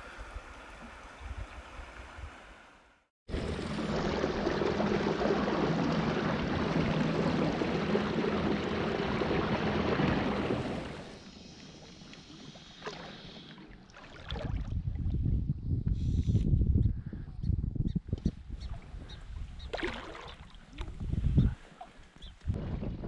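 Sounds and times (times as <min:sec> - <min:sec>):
river water rushing: 0:03.4 - 0:11.2.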